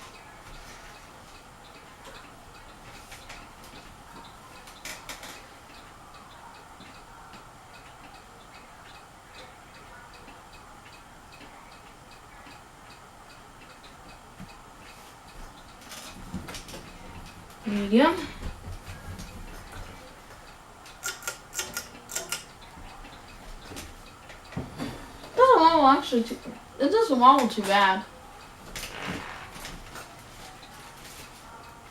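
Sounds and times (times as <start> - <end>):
ceiling fan hum and ticking: 0.0 - 31.9
sharp clicks: 20.9 - 22.5.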